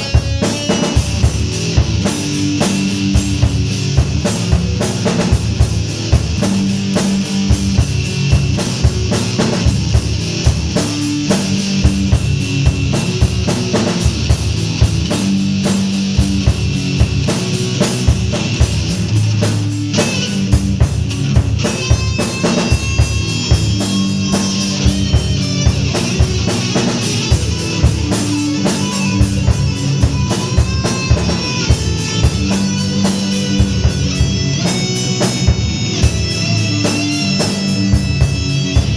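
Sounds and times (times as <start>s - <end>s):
distorted electric guitars: 0.0s - 38.9s
pounding drum kit: 0.0s - 38.9s.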